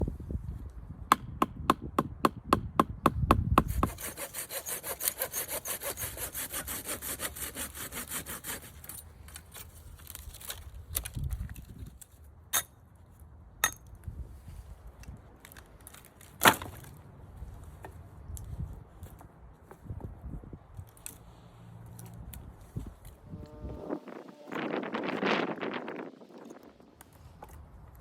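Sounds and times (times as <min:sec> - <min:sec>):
sharp strikes on wood: 0:01.1 - 0:05.2
hand saw on wood: 0:03.6 - 0:09.0.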